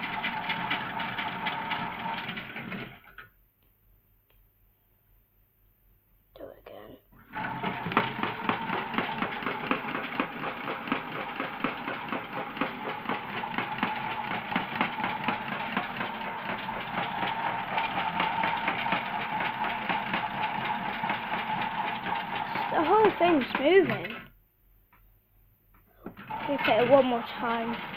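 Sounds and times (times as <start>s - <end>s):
drum rattling and knocking: 0.0s - 3.2s, 7.3s - 24.3s, 26.0s - 27.9s.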